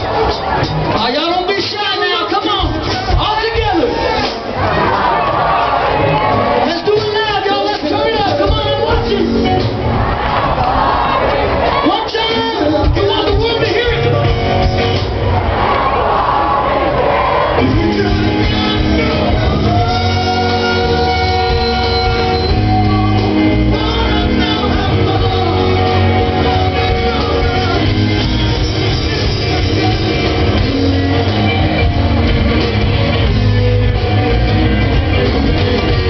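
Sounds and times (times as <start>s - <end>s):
live rock band playing: 0.0s - 16.2s, 17.1s - 36.0s
guitar: 0.0s - 36.0s
person singing: 17.6s - 31.8s.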